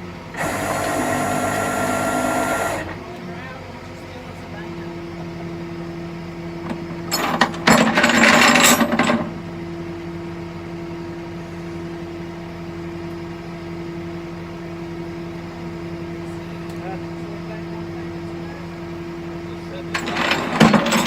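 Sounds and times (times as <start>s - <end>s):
low engine hum: 0.0s - 7.6s, 9.3s - 20.0s
metallic clattering and jingling: 7.1s - 9.3s, 19.9s - 21.0s.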